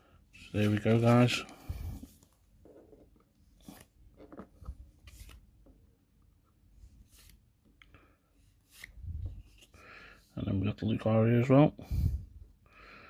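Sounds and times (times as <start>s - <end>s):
cards and packaging rustling: 0.5s - 5.7s.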